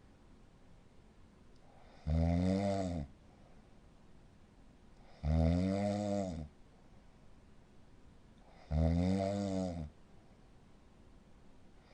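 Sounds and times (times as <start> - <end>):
pitched snores: 1.8 - 3.2, 5.0 - 6.5, 8.5 - 10.0.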